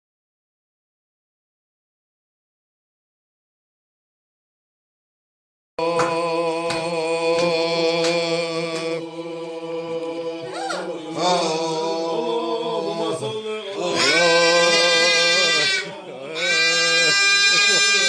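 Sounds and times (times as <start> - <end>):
chant-like singing: 5.8 - 18.0.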